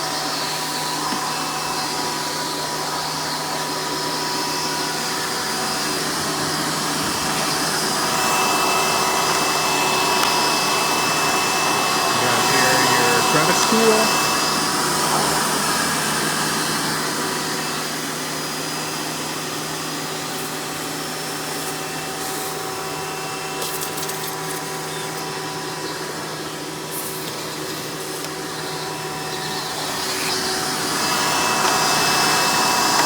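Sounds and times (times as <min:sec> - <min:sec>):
vacuum cleaner motor humming: 0:00.0 - 0:33.0.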